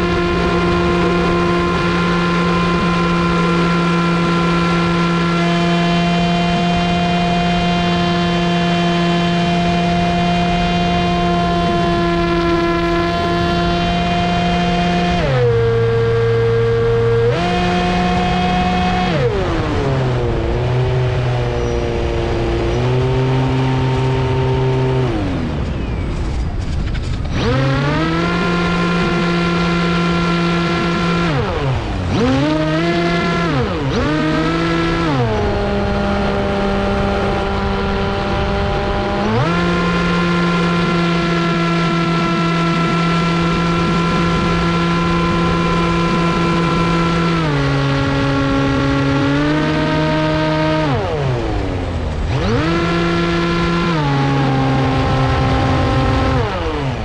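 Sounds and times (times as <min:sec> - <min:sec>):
model plane electric motor whining: 0:27.0 - 0:57.0.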